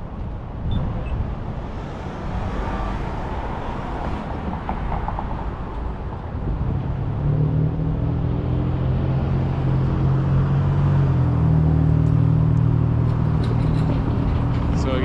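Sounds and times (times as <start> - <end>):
vehicle engine humming: 0.0 - 7.8
street traffic: 0.0 - 15.0.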